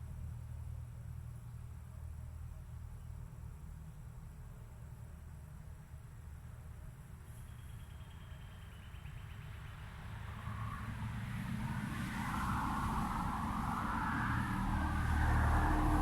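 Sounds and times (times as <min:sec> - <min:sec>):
vehicle engine rumble: 0:06.3 - 0:16.0.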